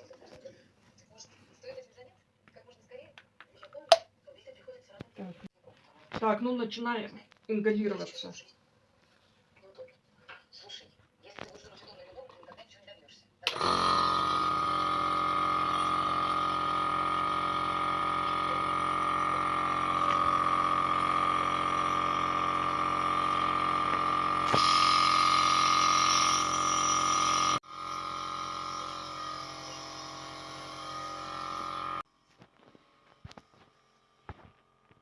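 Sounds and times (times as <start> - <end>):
nebulizer motor humming: 13.5 - 35.0.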